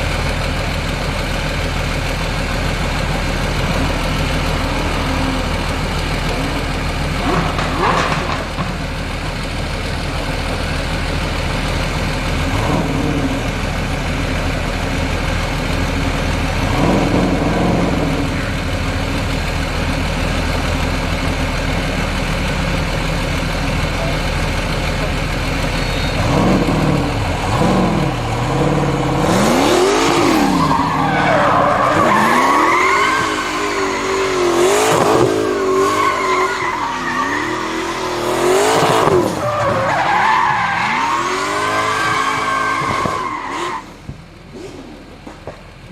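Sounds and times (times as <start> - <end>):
car engine revving: 0.0 - 45.6
tyres squealing: 25.4 - 43.9.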